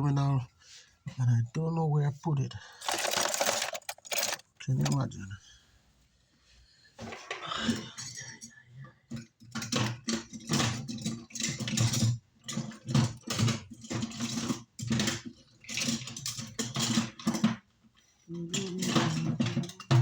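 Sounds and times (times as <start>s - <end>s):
metal tools clattering: 2.7s - 5.2s, 9.1s - 20.0s.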